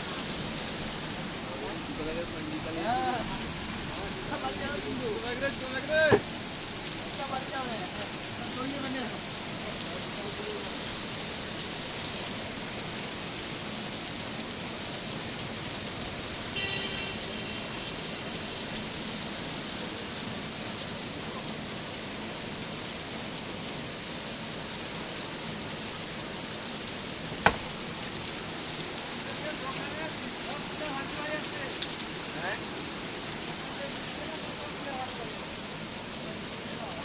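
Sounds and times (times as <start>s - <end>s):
rain falling: 0.0s - 37.0s
brief high tone: 16.6s - 17.8s
sharp knock: 27.4s - 27.8s.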